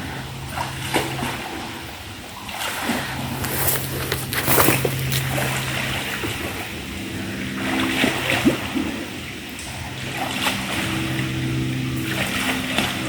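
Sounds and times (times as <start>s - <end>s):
low steady hum: 0.0s - 13.0s
footsteps splashing through mud: 2.8s - 6.8s.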